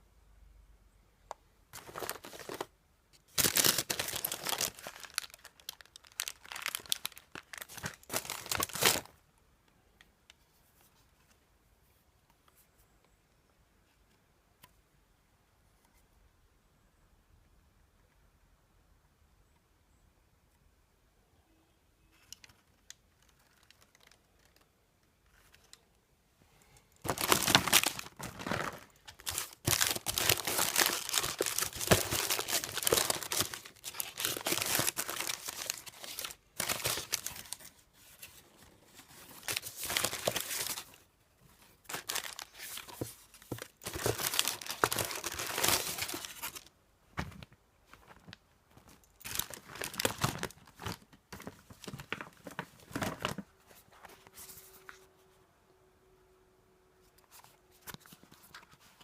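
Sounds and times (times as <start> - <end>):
packaging tearing and crumpling: 3.3 - 9.1, 27.0 - 37.7, 39.4 - 40.9, 41.9 - 46.7, 49.2 - 51.0.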